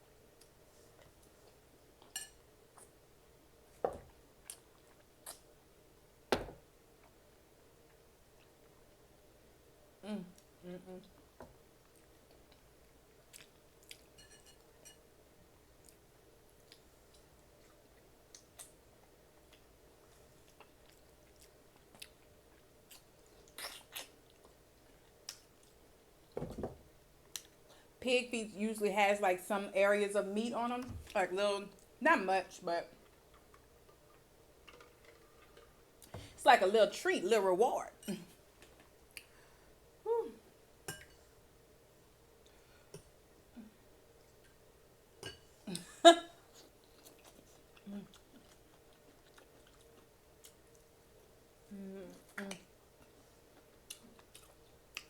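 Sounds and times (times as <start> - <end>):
person chewing: 11.8 - 14.2, 16.6 - 25.8, 46.5 - 51.3, 52.0 - 55.0.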